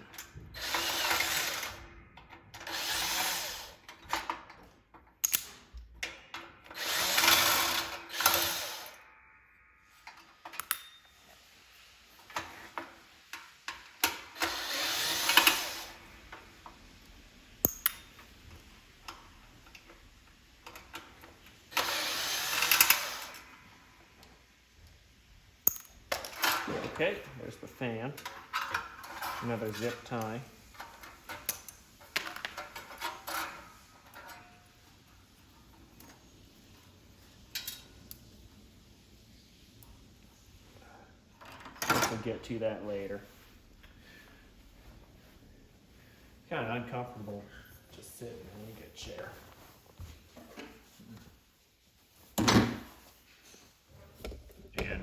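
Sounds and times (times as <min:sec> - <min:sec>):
power drill running: 0:00.4 - 0:01.9, 0:02.6 - 0:03.8, 0:06.7 - 0:09.0, 0:14.3 - 0:16.1, 0:21.7 - 0:23.4
clicks and knocks of parts: 0:03.8 - 0:08.4, 0:10.0 - 0:11.0, 0:17.6 - 0:18.3, 0:25.6 - 0:27.0, 0:28.2 - 0:34.6.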